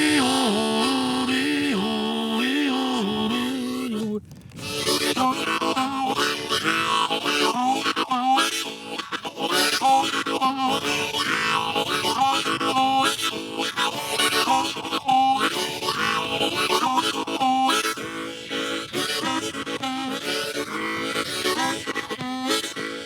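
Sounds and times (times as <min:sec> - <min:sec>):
harmonica playing chords: 0:00.0 - 0:04.0, 0:04.6 - 0:23.0.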